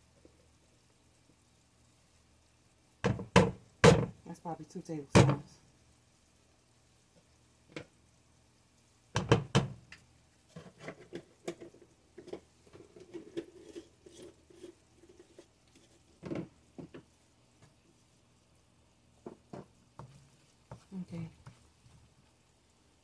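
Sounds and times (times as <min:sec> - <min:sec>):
utensil knocking on cooking pot: 0:09.2 - 0:09.7
utensil scraping pot: 0:10.5 - 0:16.6.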